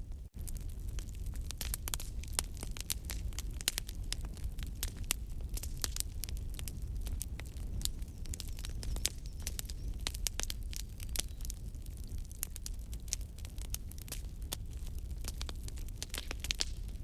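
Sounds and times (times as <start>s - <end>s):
low rumble of burning: 0.0s - 17.0s
wood fire snaps and pops: 0.0s - 17.0s.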